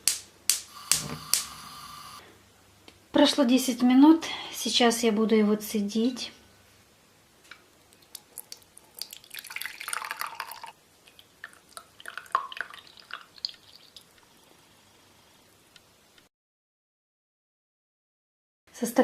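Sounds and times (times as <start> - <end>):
liquid dripping: 7.9 - 14.4
liquid pouring into a glass: 8.0 - 14.2.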